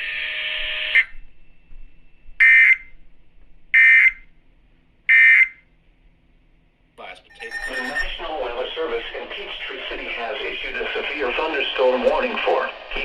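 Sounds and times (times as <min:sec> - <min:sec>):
shrill digital data tone bursts: 0:07.3 - 0:10.3
steady hiss: 0:08.1 - 0:13.0.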